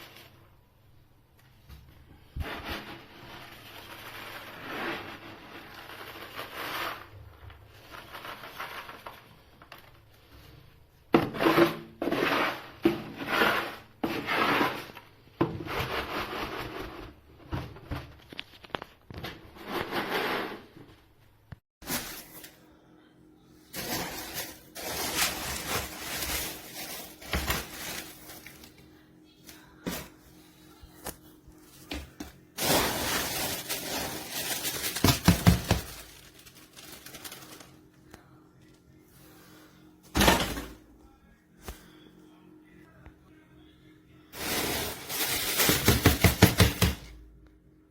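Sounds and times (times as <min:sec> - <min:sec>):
cat litter being scraped: 0:02.3 - 0:09.5, 0:11.2 - 0:17.2, 0:19.5 - 0:20.8, 0:21.8 - 0:22.6, 0:23.7 - 0:28.8, 0:31.8 - 0:37.7, 0:44.4 - 0:47.0.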